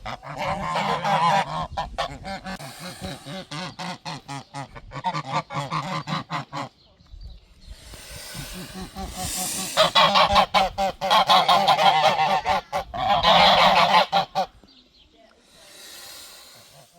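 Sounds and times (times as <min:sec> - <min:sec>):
geese honking: 0:00.0 - 0:06.8, 0:08.7 - 0:14.6
breathy hiss: 0:02.6 - 0:03.7, 0:07.6 - 0:10.6, 0:15.3 - 0:16.9.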